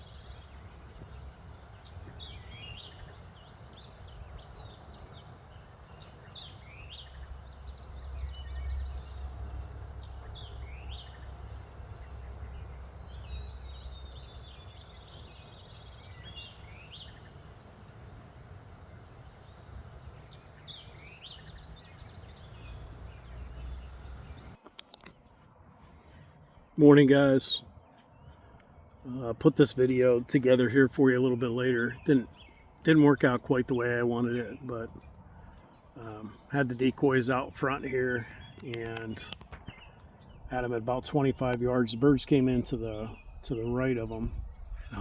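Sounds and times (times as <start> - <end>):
steady low rumble: 0.0 - 24.6, 40.0 - 45.0
songbirds chirping and trilling: 0.0 - 45.0.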